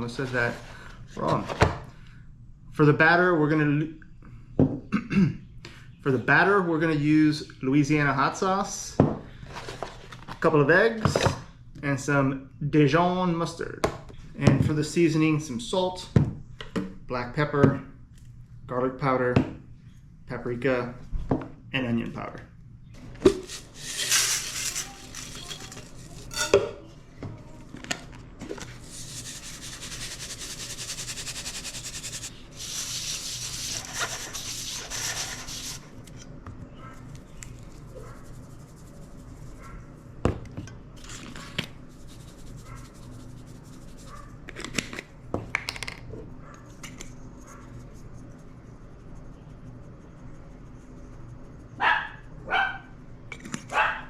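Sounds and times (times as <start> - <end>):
rustling scraping noise: 23.3 - 26.5, 28.4 - 36.3
bowls and utensils clinking: 23.3 - 26.8.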